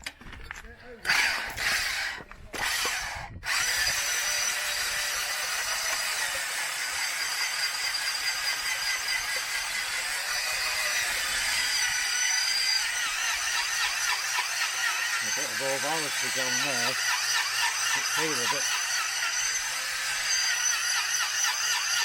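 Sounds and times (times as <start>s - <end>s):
hone stones grinding in cylinder: 10.5s - 22.0s.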